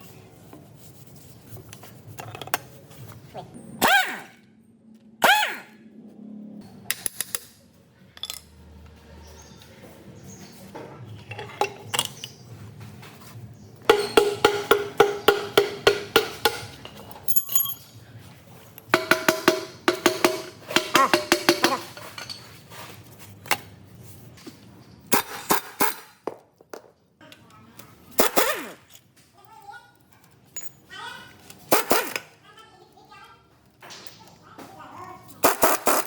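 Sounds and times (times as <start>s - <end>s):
hammer striking metal: 13.9s - 17.8s, 19.0s - 22.2s.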